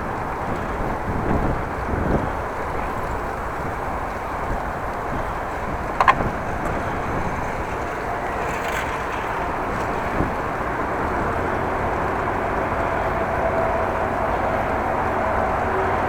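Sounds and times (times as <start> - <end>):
road and traffic noise: 0.0 - 16.0
wind on microphone: 0.0 - 16.0.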